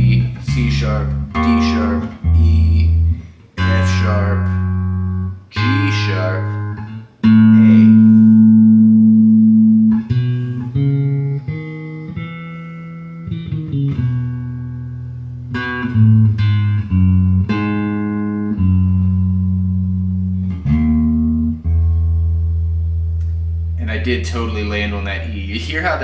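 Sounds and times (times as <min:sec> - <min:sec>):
electric bass guitar melody: 0:00.0 - 0:25.8.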